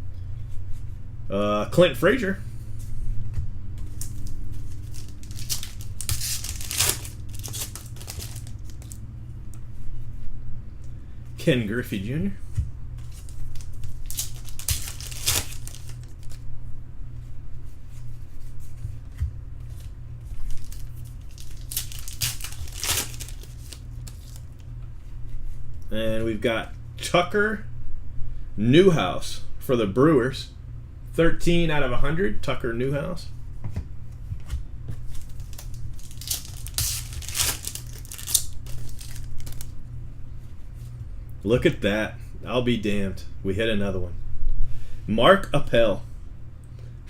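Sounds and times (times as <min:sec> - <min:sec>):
card pack wrappers tearing: 0:03.9 - 0:09.0, 0:13.0 - 0:16.4, 0:20.3 - 0:24.6, 0:35.1 - 0:39.8.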